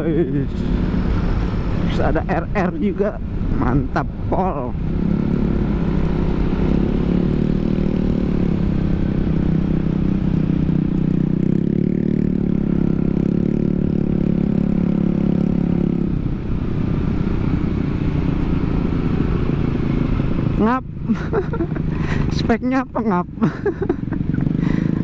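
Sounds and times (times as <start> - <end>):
scooter engine riding: 16.6 - 25.0.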